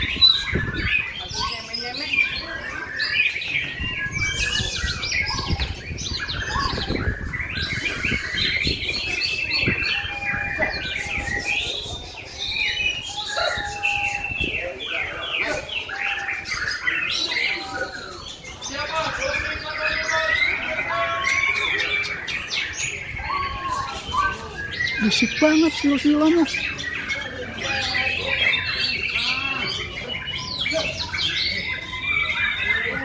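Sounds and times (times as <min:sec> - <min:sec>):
birds whistling and chirping: 0:00.0 - 0:33.0.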